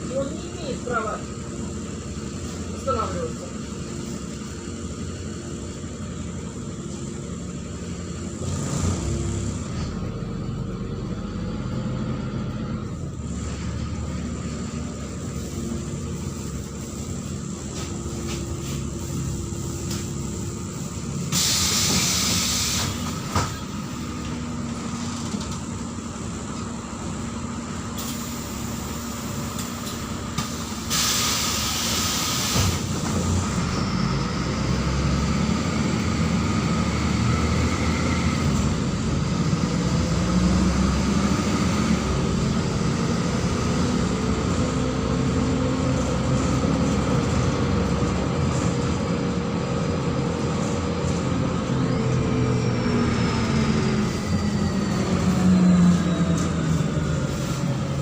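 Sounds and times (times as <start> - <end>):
bus diesel engine: 0.0 - 58.0
road noise: 0.0 - 58.0
compressed air hiss: 21.3 - 23.0, 30.4 - 32.9.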